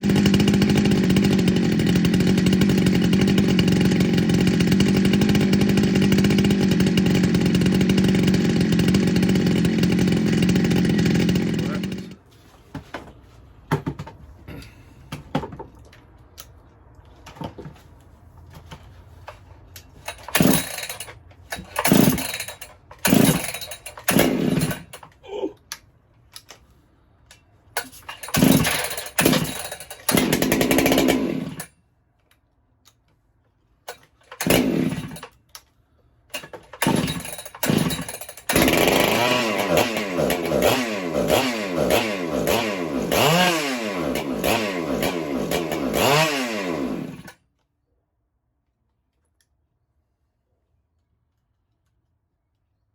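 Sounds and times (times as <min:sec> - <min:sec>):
chainsaw pull-starting and revving: 0:00.0 - 0:12.2, 0:20.0 - 0:25.2, 0:27.8 - 0:31.7, 0:34.0 - 0:35.4, 0:36.4 - 0:47.4.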